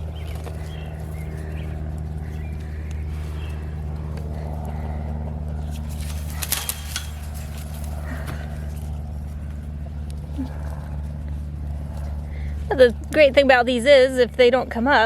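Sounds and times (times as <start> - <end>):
low motor hum: 0.0 - 15.0
rustling: 5.6 - 9.6.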